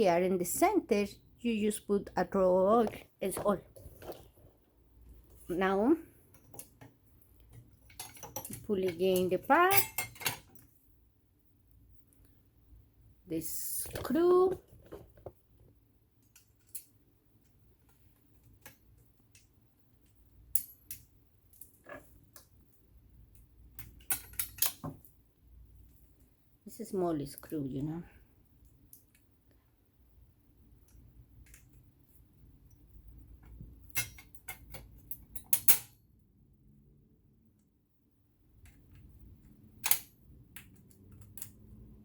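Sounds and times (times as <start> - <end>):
small metal parts clicking: 7.5 - 10.7, 16.2 - 17.0, 18.5 - 22.5, 23.7 - 25.0, 39.8 - 41.6.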